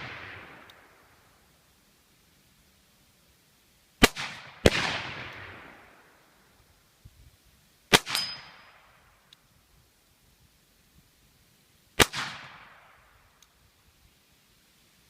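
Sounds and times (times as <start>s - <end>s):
revolver gunshots: 4.0s - 5.9s, 7.9s - 8.6s, 12.0s - 12.9s
metallic clang: 8.1s - 8.7s.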